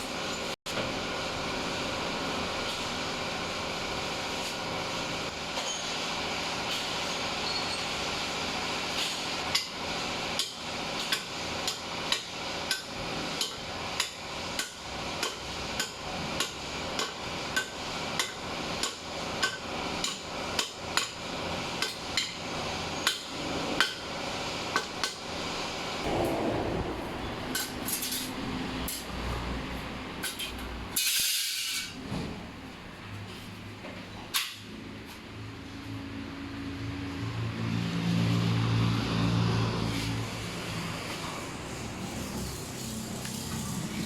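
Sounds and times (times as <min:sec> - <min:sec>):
steady background hum: 0:12.9 - 0:35.5
hammer strikes: 0:26.0 - 0:29.1.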